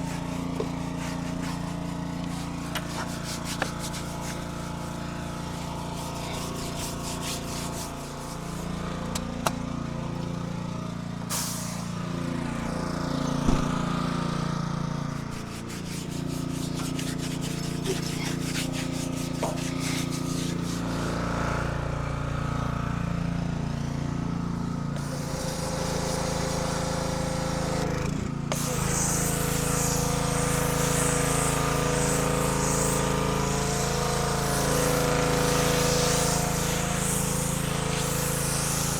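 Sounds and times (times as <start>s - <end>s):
water spray hissing: 0.0s - 8.8s, 11.3s - 12.1s, 15.2s - 21.2s, 25.0s - 27.9s, 28.5s - 38.9s
small gas engine running: 0.0s - 38.9s.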